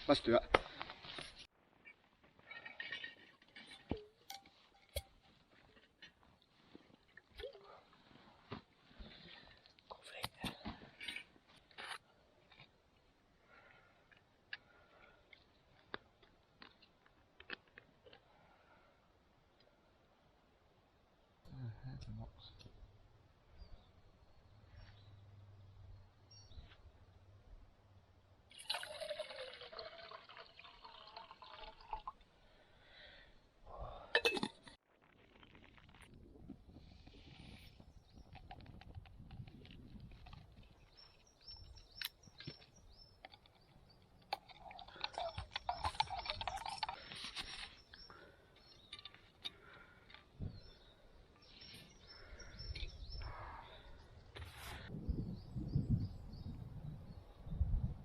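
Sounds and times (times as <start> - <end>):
water pouring into a pot: 28.5 - 32.2.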